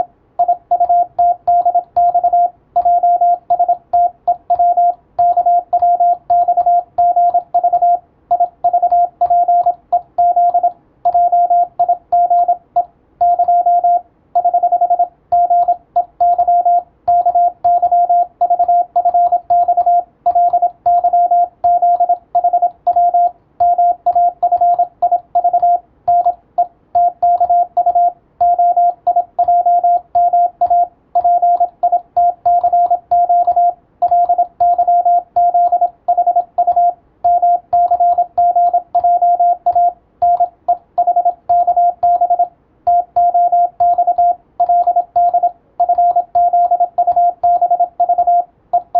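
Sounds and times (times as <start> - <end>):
morse code tone: 0.0 - 48.9.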